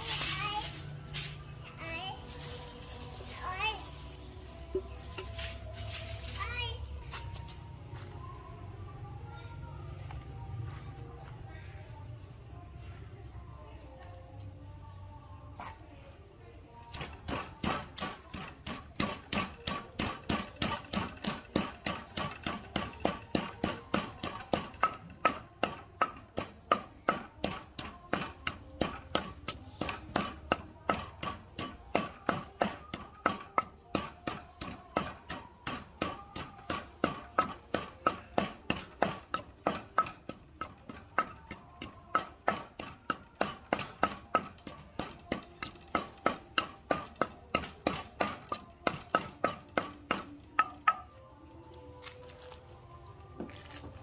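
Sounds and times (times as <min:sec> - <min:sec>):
rhythmic knocking: 0:16.9 - 0:51.2.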